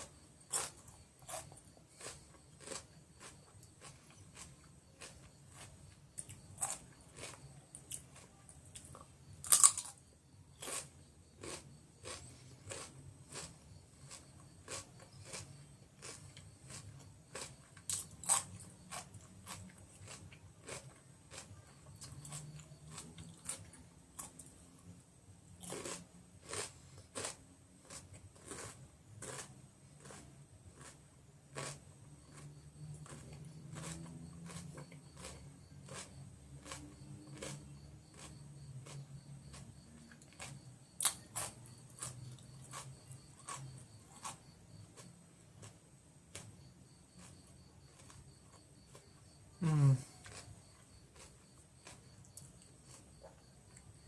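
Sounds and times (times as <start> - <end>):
cucumber crunching: 0.0 - 25.0, 25.6 - 54.0.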